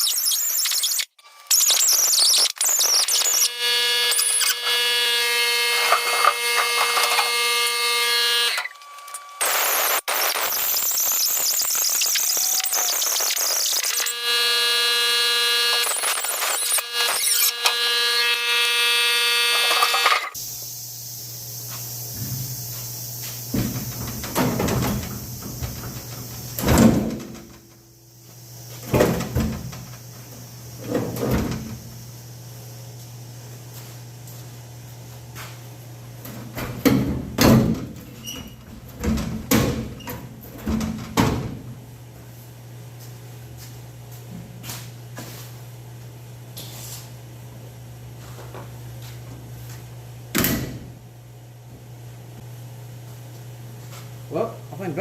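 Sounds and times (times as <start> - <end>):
wire wheel grinder whining: 0.0 - 20.4.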